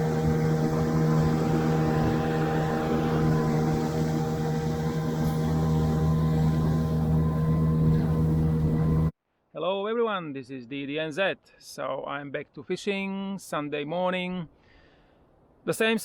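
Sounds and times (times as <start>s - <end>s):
outboard motor running: 0.0s - 9.1s.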